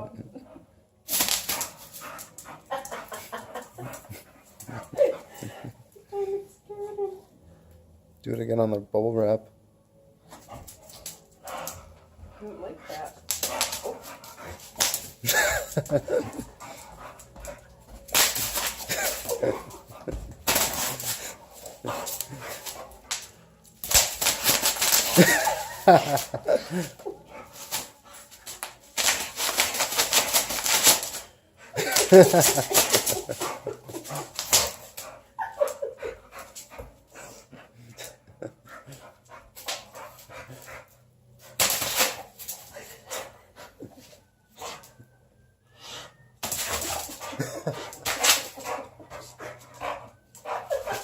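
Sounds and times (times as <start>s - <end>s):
dog panting: 1.6s - 5.8s, 10.3s - 23.6s, 24.2s - 41.5s, 45.8s - 51.0s
claws clicking and scrabbling: 13.2s - 35.1s
bubble wrap crackling: 31.8s - 33.4s.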